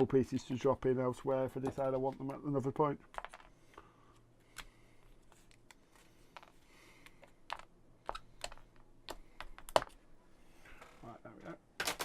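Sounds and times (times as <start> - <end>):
wooden pieces clicking and snapping: 11.8 - 12.0.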